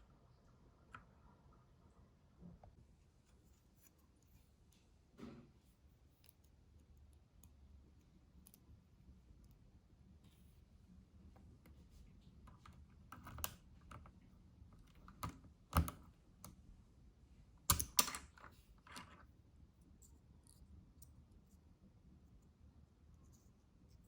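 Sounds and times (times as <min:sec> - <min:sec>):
keycaps clicking off keyboard: 0:17.7 - 0:18.4.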